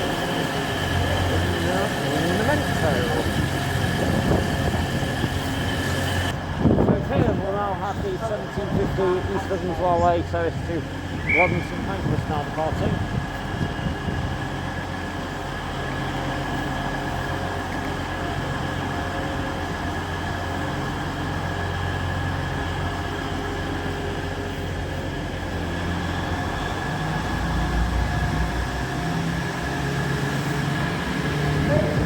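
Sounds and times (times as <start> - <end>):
high whine: 0.0 - 17.7
diesel train engine drone: 0.0 - 32.0.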